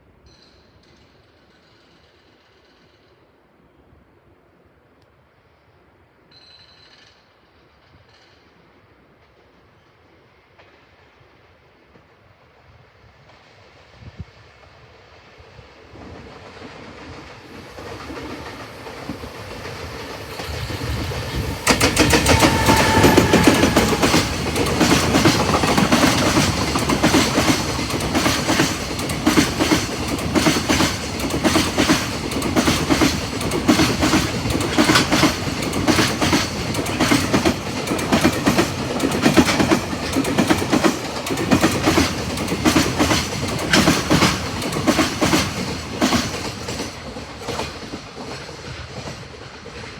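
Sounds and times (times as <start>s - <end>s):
freight train passing: 7.0s - 49.9s
locomotive tone dropping in pitch: 19.2s - 26.6s.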